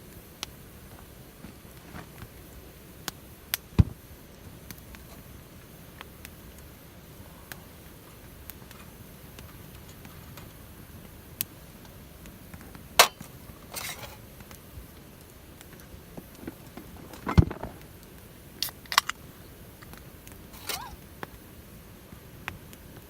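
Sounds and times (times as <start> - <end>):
wood fire crackling: 0.0 - 23.0
sharp pops from fire: 0.1 - 6.8, 7.5 - 21.5
knocks with low thud: 3.8 - 4.0.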